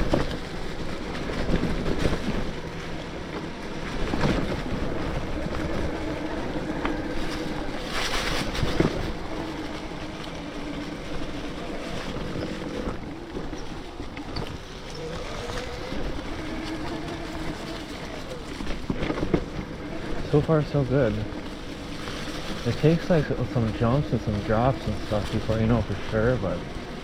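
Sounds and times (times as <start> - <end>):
electric bike motor whining: 0.0 - 27.0
tyres rolling on dirt: 0.0 - 27.0.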